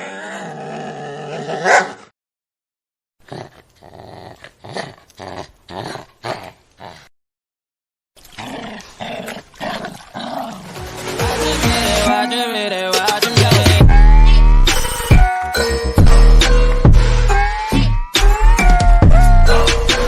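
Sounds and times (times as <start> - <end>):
dog growling: 0.0 - 2.0, 3.3 - 7.1, 8.3 - 10.7
dog barking: 1.6 - 2.1.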